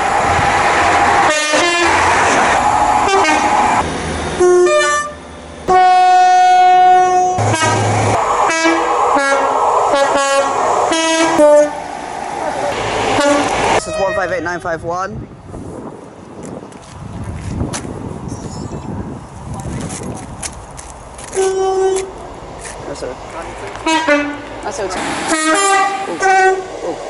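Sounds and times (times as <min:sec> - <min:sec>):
train rumble: 0:00.0 - 0:27.0
two-tone train horn blasts: 0:01.2 - 0:02.0, 0:03.0 - 0:03.8, 0:04.4 - 0:11.8, 0:13.2 - 0:14.4, 0:21.4 - 0:22.1, 0:23.8 - 0:24.5, 0:25.3 - 0:26.7.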